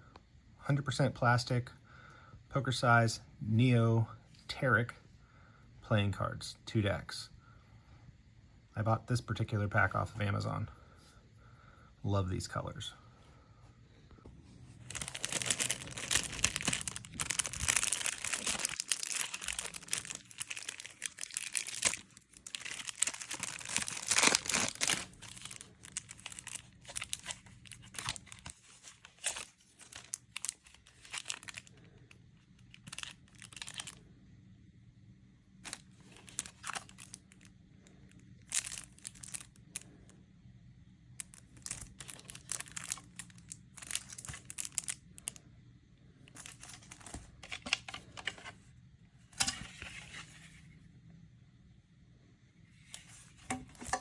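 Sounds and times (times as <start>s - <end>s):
plastic wrapping crackling: 14.8s - 34.0s, 35.6s - 37.5s, 38.4s - 39.9s, 41.2s - 45.4s, 46.3s - 48.5s, 52.9s - 54.0s.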